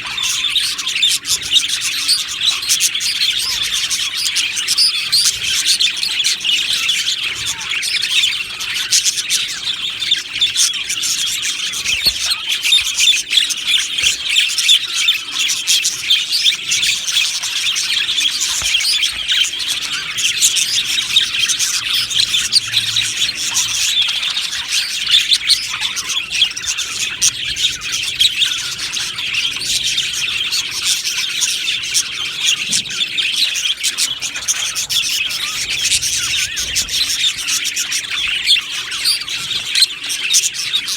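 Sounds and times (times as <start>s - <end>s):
flock of budgerigars chattering: 0.0s - 40.9s.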